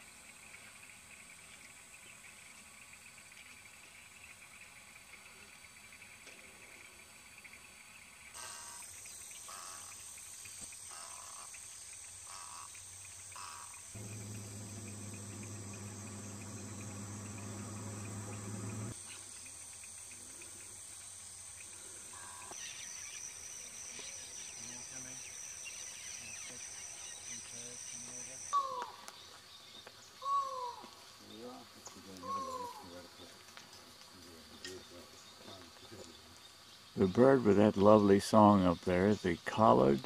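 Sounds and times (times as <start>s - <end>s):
insects trilling: 0.0s - 40.0s
lower insect trill: 0.0s - 40.0s
steady low hum: 14.0s - 19.0s.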